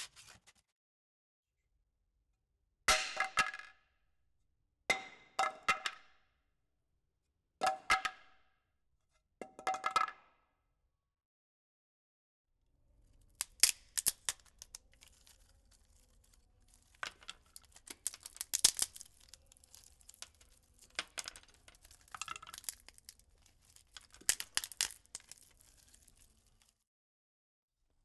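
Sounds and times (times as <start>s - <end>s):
wood crackling and clicking: 13.4s - 26.7s.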